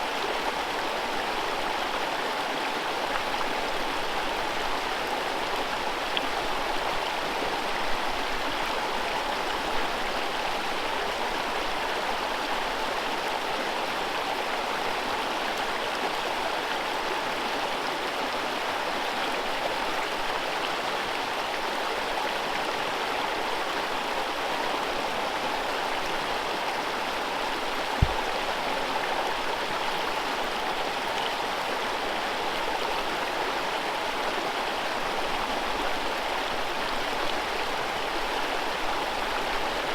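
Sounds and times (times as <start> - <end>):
water rushing over rocks: 27.4 - 30.5
low thump: 28.0 - 28.3.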